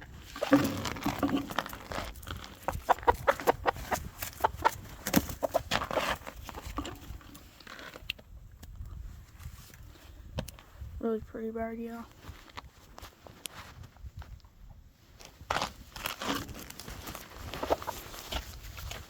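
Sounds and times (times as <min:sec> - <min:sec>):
chickens clucking: 0:02.6 - 0:07.2, 0:17.6 - 0:18.2.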